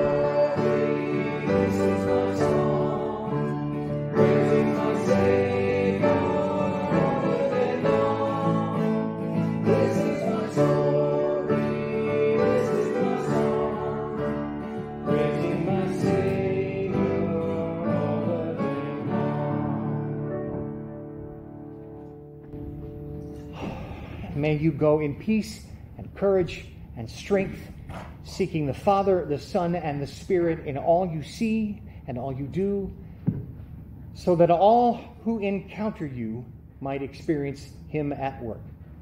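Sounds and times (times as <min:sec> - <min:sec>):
voices singing a hymn: 0:00.0 - 0:20.8
strummed acoustic guitar: 0:00.0 - 0:24.0.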